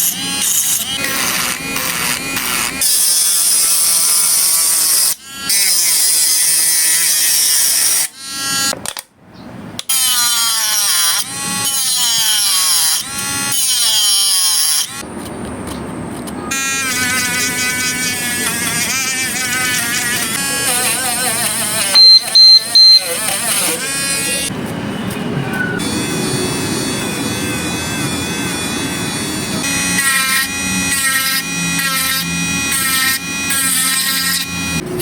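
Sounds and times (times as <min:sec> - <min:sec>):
small electric motor whining: 0:00.0 - 0:08.7, 0:16.4 - 0:24.5, 0:25.8 - 0:34.9.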